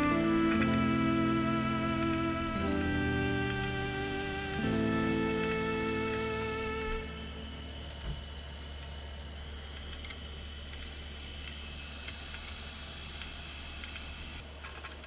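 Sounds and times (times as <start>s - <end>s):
low hum: 0.0s - 14.4s
hiss: 7.8s - 14.5s.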